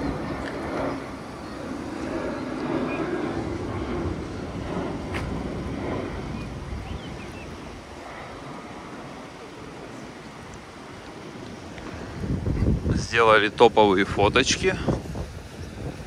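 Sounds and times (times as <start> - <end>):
wind buffeting microphone: 0.0 - 16.0.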